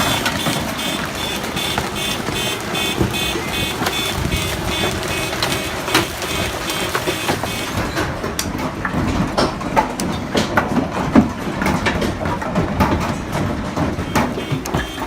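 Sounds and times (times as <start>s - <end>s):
steady rumbling: 0.0s - 9.4s
knocks and clatter: 0.0s - 15.0s.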